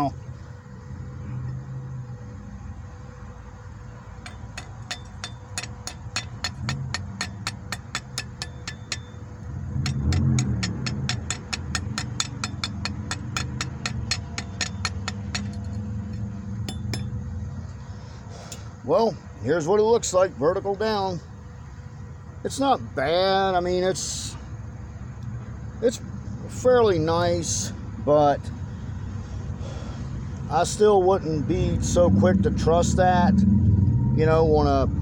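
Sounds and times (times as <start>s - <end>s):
chipping hammer tapping metal: 4.2s - 17.3s.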